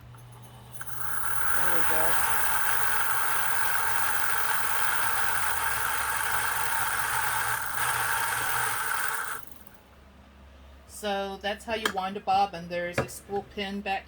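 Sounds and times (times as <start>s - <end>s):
sewing machine motor running: 0.8s - 9.8s.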